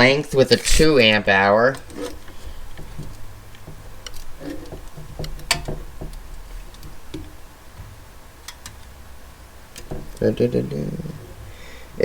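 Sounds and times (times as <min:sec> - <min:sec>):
tools clicking on work surface: 0:01.7 - 0:07.4.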